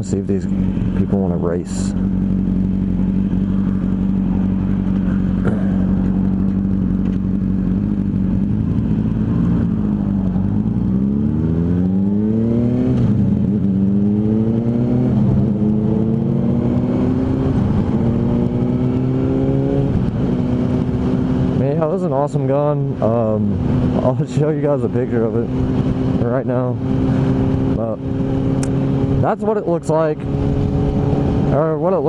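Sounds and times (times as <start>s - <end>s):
motorcycle engine: 0.0s - 32.0s
wind noise: 8.6s - 21.6s.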